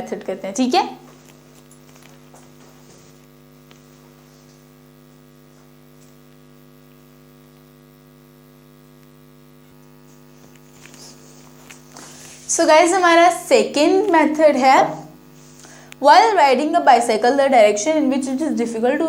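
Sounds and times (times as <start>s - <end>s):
electrical hum: 0.0s - 19.0s.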